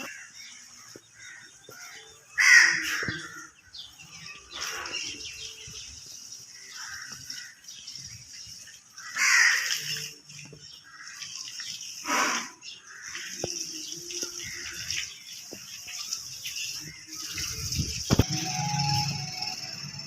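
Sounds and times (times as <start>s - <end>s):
crows cawing: 1.2s - 3.5s, 9.0s - 9.8s, 12.1s - 13.4s
high-pitched background hiss: 17.5s - 20.0s.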